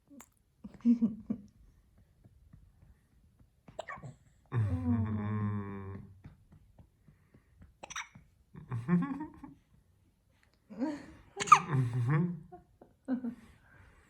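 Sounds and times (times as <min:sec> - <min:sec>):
person hiccuping: 0:11.4 - 0:11.7.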